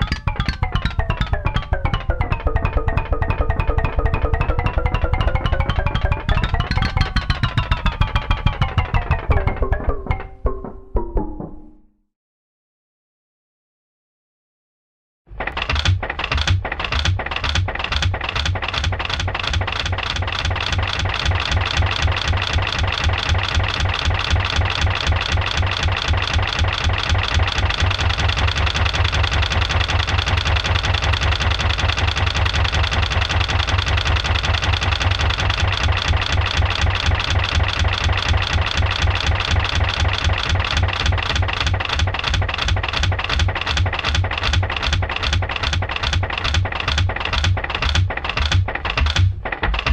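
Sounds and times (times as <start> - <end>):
engine knocking beat: 0.0 - 10.6, 15.5 - 49.9.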